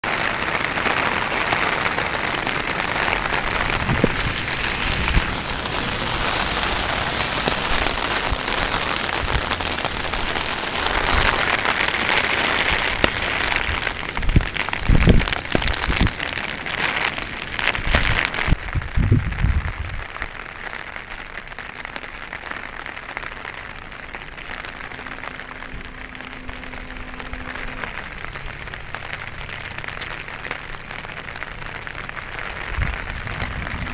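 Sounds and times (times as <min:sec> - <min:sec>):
heavy rain falling: 0:00.0 - 0:33.9
low thumps: 0:23.5 - 0:33.9.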